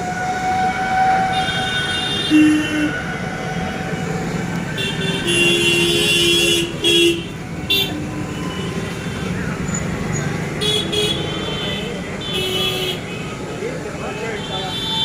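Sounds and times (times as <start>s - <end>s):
vehicle horns honking: 0.6s - 3.0s, 4.7s - 9.5s, 10.5s - 13.4s, 14.1s - 15.0s.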